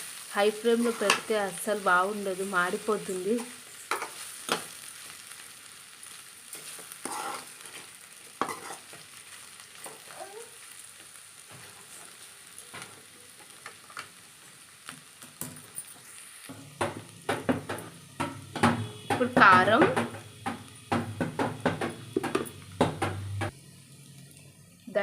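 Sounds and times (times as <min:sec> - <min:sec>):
vegetables sizzling in oil: 0:00.0 - 0:25.0
spatula scraping a pan: 0:00.8 - 0:01.3, 0:06.5 - 0:09.2.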